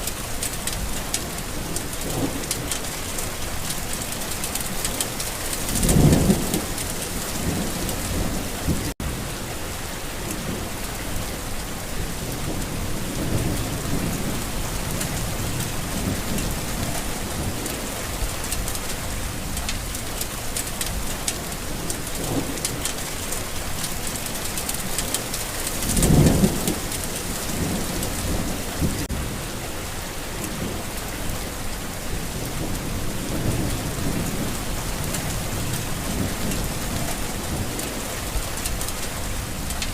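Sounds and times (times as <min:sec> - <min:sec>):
steady rain falling: 0:00.0 - 0:39.9
distant thunder rumbling: 0:21.4 - 0:29.6.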